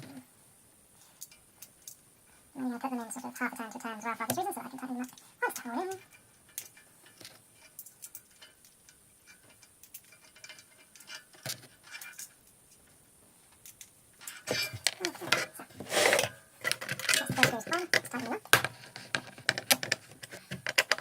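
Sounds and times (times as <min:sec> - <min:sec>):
handling noise: 0:04.2 - 0:21.0.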